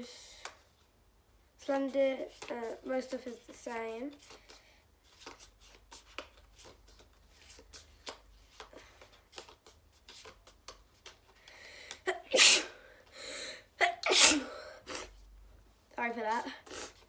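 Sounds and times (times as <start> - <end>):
person sneezing: 12.1 - 12.8, 13.8 - 15.1
intake of breath: 12.7 - 13.7.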